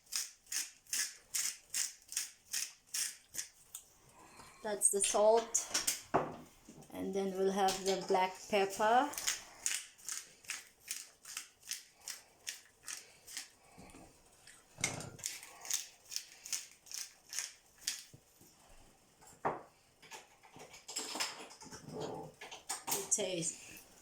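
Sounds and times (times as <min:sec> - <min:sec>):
pepper grinder grinding: 0:00.0 - 0:03.8, 0:07.7 - 0:13.8, 0:14.4 - 0:18.2.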